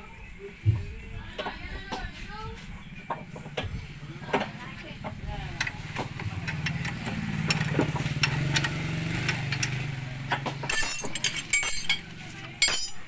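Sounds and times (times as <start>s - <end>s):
motor engine running: 3.6s - 12.8s
metal tools clinking: 10.6s - 13.0s.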